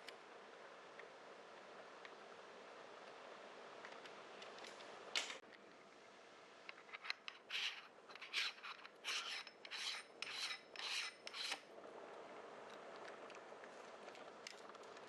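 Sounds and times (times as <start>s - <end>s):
camera cooling fan hiss: 0.0s - 15.0s
rasping rubbing strokes: 7.3s - 11.6s.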